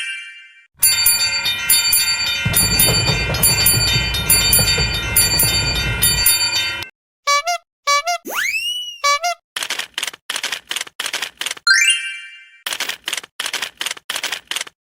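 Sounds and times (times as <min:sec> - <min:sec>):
railway crossing bell ringing: 0:00.8 - 0:06.9
low rumble: 0:01.3 - 0:06.8.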